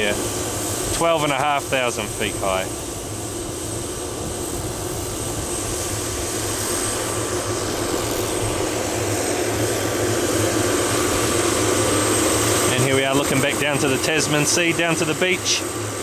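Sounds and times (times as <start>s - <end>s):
helicopter turbine and rotor: 0.0s - 16.0s.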